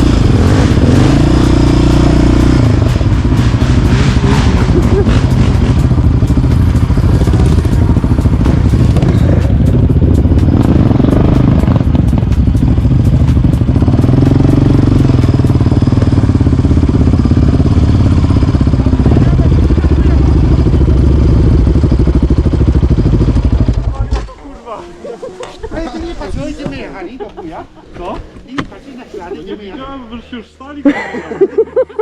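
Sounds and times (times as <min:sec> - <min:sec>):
quad bike engine running: 0:00.0 - 0:24.3.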